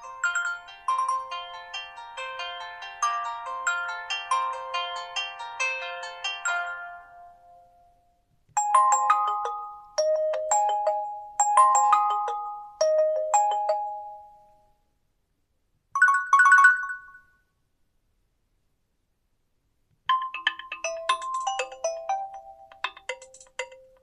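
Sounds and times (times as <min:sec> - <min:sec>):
phone ringtone chimes: 0:00.0 - 0:05.1, 0:08.6 - 0:14.4, 0:16.0 - 0:17.4, 0:20.1 - 0:24.0.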